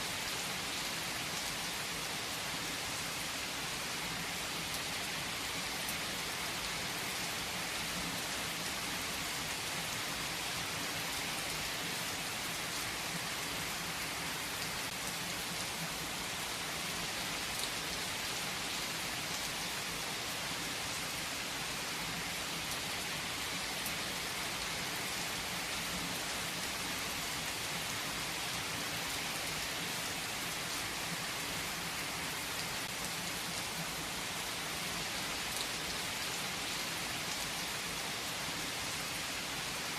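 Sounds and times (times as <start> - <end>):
rain on a hard surface: 0.0 - 39.9.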